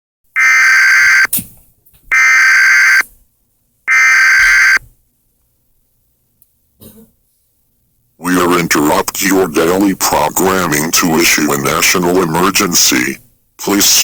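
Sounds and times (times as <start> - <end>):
harsh buzzy digital tones: 0.4 - 1.3, 2.1 - 3.0, 3.9 - 4.8.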